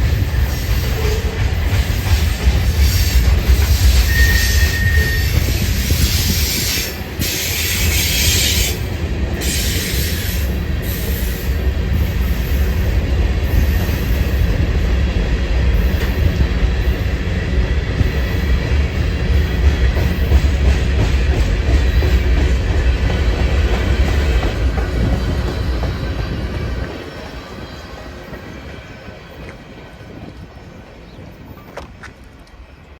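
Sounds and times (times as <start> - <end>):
freight train rumbling past: 0.0 - 32.9
high-pitched wheel squeal: 3.9 - 8.8.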